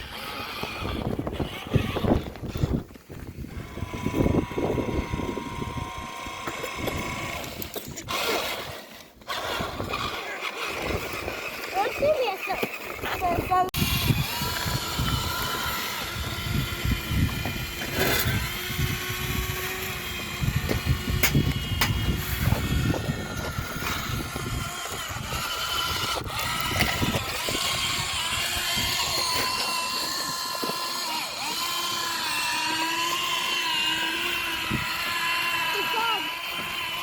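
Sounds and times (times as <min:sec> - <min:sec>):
toy vehicle electric motors whining: 0:00.0 - 0:37.0
low rumbling: 0:12.9 - 0:35.8.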